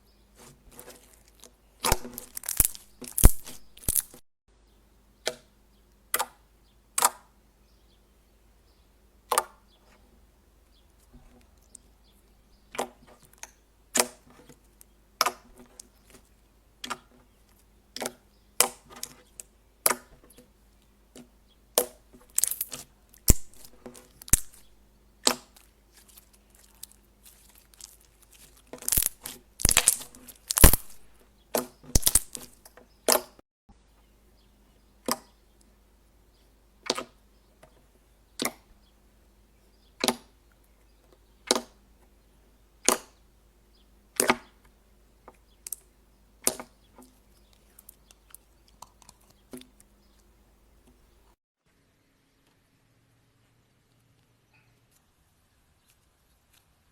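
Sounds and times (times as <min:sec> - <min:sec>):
slime squeezed with popping clicks: 0:01.8 - 0:04.2, 0:22.4 - 0:24.6, 0:28.8 - 0:31.0, 0:32.0 - 0:32.5.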